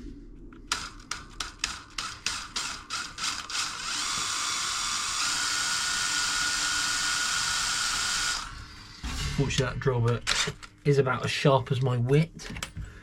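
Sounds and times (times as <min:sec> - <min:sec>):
power drill drilling into metal: 0:02.0 - 0:08.6
person talking: 0:09.3 - 0:12.6.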